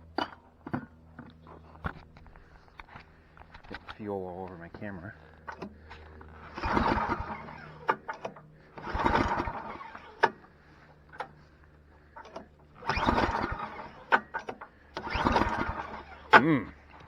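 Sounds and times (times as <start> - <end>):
engine cranking with rough whir: 0.0 - 17.0
recoil starter clicks: 5.4 - 10.5, 12.2 - 17.0.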